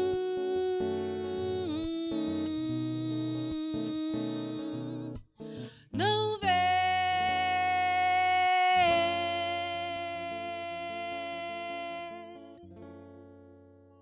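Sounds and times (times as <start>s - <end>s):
woman singing a held note: 0.0s - 4.8s.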